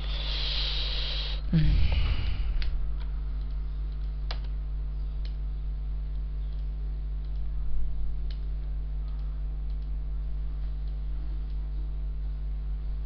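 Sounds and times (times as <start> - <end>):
low electrical hum: 0.0 - 13.0
sharp clicks: 1.9 - 4.6, 5.2 - 5.5, 6.1 - 7.5, 8.2 - 10.0.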